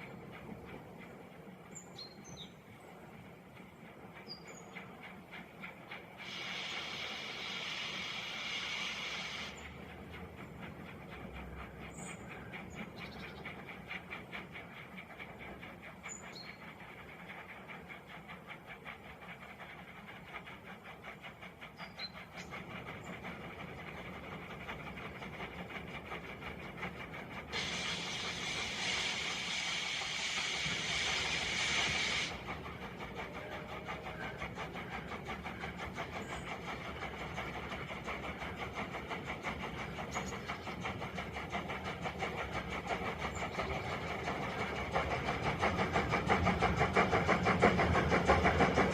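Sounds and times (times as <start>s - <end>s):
diesel locomotive engine running: 0.0s - 48.9s
loud air hiss: 6.2s - 9.8s, 27.4s - 33.0s.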